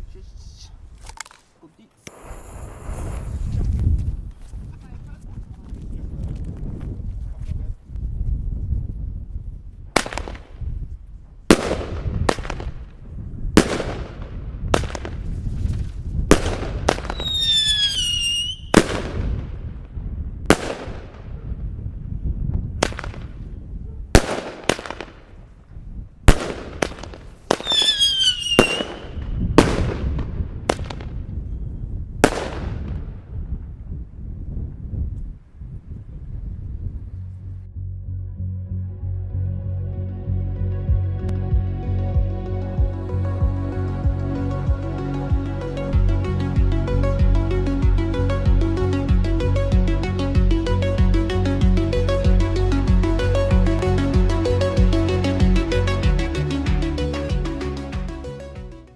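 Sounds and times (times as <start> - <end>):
falling firework whistle: 2.1 - 3.7, 17.0 - 18.8, 27.5 - 29.4
firework bangs echoing: 10.0 - 10.6, 11.5 - 13.0, 13.6 - 19.8, 20.5 - 21.6, 22.8 - 23.5, 24.2 - 25.5, 26.3 - 31.3, 32.2 - 33.2.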